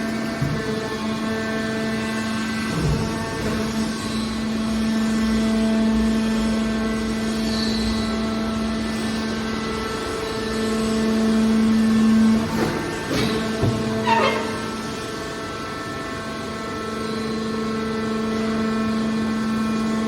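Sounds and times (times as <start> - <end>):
hydraulic pump hum: 0.0 - 7.4, 8.1 - 15.8.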